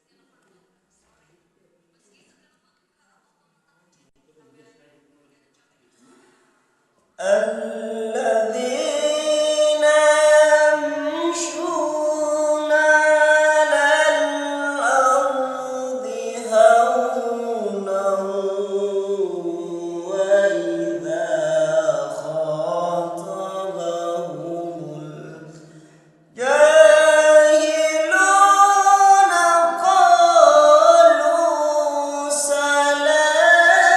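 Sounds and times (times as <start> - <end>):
man chanting melodically: 7.2 - 33.9.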